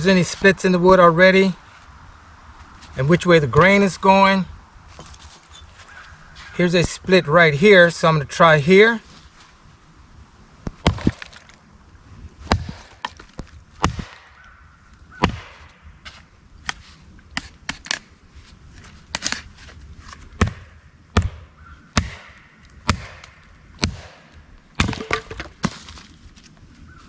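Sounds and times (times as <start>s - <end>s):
axe striking log: 10.7s - 11.4s, 12.4s - 14.4s, 15.2s - 16.8s, 20.4s - 26.0s.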